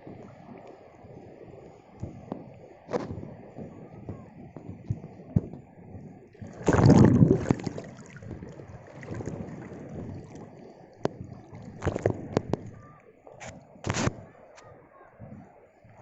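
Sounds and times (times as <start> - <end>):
rough sea surf sloshing: 6.2 - 16.0.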